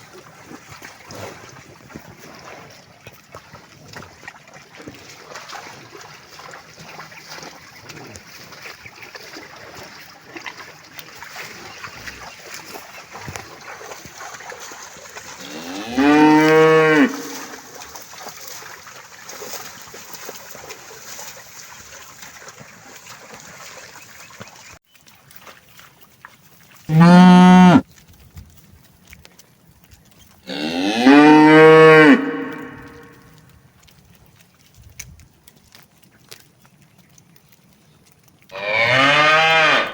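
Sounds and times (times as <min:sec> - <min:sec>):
cattle mooing: 0:15.4 - 0:17.6, 0:26.9 - 0:27.8, 0:30.5 - 0:33.1, 0:38.5 - 0:39.9.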